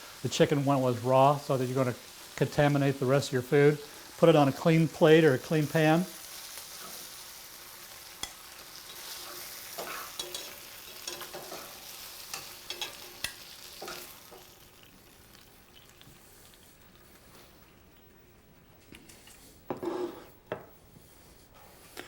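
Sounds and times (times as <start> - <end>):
chicken sizzling in a skillet: 0.0 - 17.9
utensil clicking against pan: 9.8 - 14.5.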